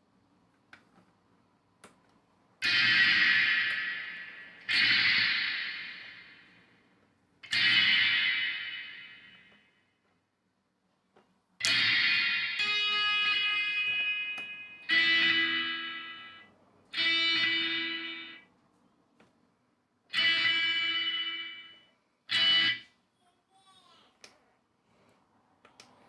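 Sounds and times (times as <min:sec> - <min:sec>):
electric guitar chords strummed: 0:02.6 - 0:06.4, 0:07.4 - 0:09.6, 0:11.6 - 0:16.4, 0:17.0 - 0:18.4, 0:20.1 - 0:22.8.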